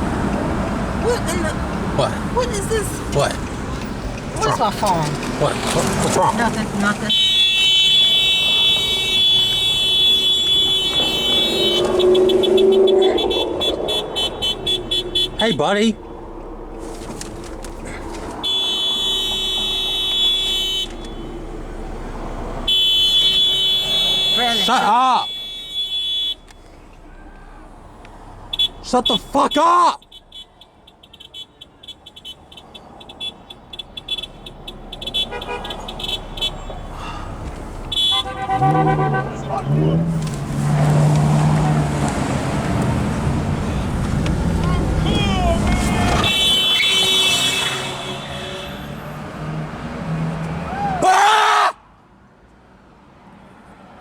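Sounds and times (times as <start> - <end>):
road noise: 0.0 - 54.0
car horn: 6.8 - 49.6.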